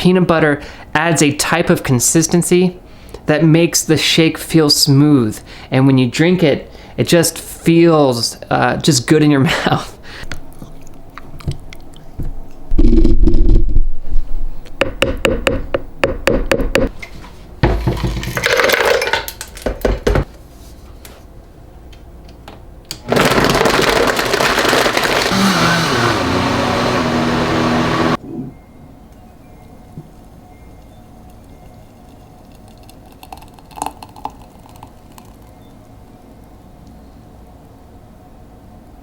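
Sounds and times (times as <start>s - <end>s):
electric blender running: 23.1s - 28.2s.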